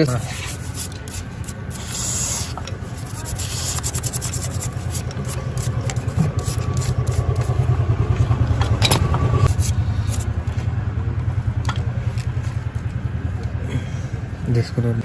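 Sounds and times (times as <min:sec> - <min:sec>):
motorcycle engine running: 0:03.8 - 0:15.0.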